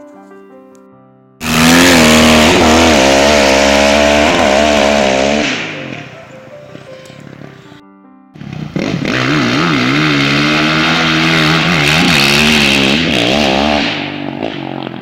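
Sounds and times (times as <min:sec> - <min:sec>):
held musical notes: 0:00.0 - 0:08.7
small engine revving: 0:01.4 - 0:06.1, 0:08.4 - 0:15.0.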